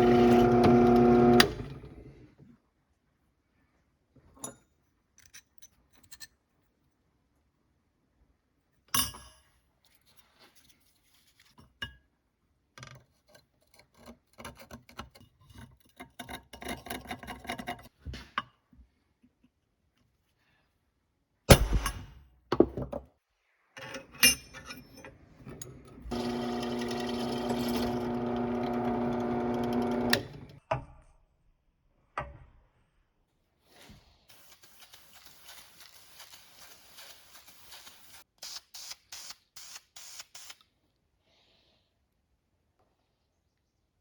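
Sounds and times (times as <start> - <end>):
small motor running: 0.0 - 2.0, 26.1 - 30.6.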